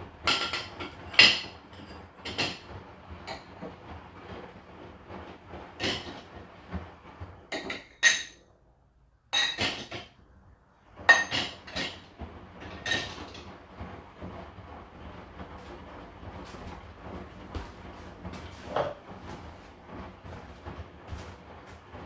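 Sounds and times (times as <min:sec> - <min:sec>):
dishes and glasses clinking: 0:07.6 - 0:08.4, 0:09.4 - 0:10.1, 0:11.1 - 0:12.0.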